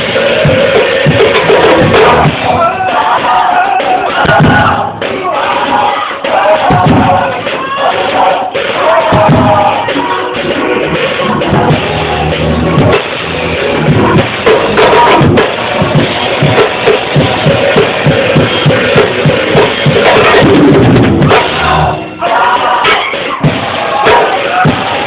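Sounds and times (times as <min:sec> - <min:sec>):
loud praise music with drums: 0:00.0 - 0:25.0.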